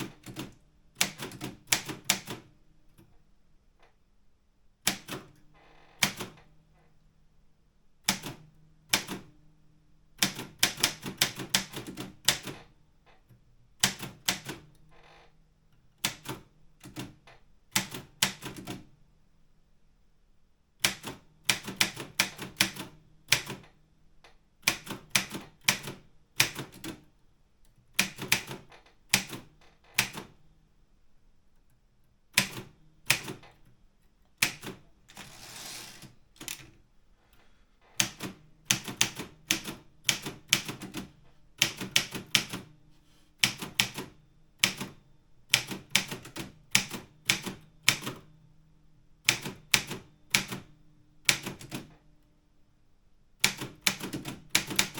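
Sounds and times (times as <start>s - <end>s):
manual typewriter typing: 34.4s - 36.7s.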